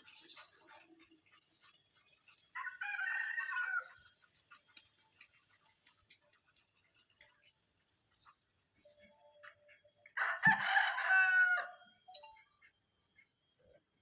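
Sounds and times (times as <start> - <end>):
rooster crowing: 2.6 - 3.9, 10.2 - 12.0
faint ticks: 4.2 - 10.2.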